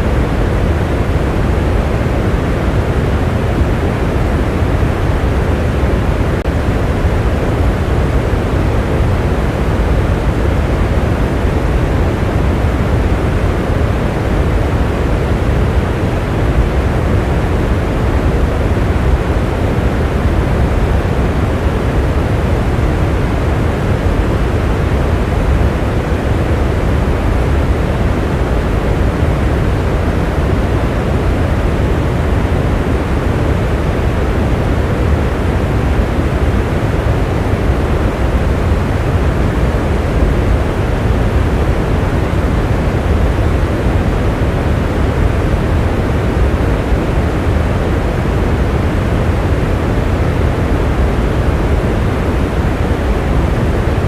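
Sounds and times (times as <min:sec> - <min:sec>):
steady rain: 0:00.0 - 0:54.0.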